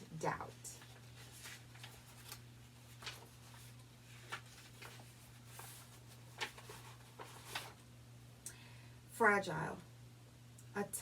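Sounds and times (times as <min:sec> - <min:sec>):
book pages rustling: 0:00.5 - 0:07.8.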